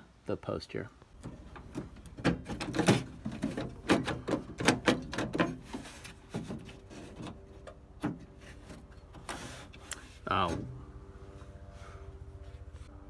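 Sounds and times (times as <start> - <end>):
metallic clicks and clunks: 1.2 - 10.0.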